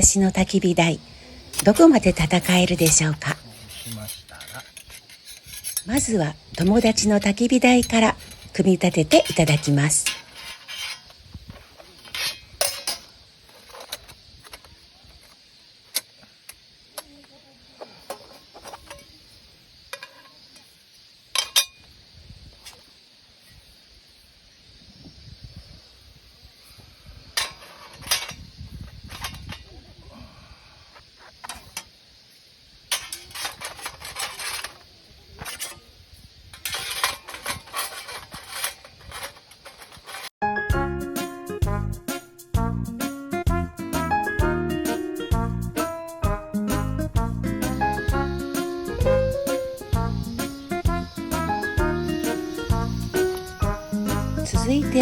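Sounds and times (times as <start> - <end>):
metal parts clinking together: 2.4 - 11.1, 12.0 - 15.3, 21.4 - 21.9, 27.4 - 28.4, 32.9 - 34.8, 36.5 - 40.3.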